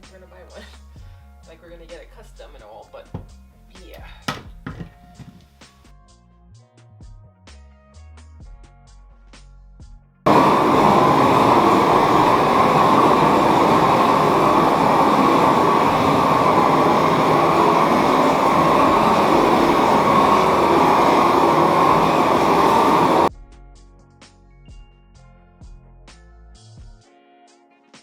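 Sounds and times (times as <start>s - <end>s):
blowtorch rushing: 10.3s - 23.3s.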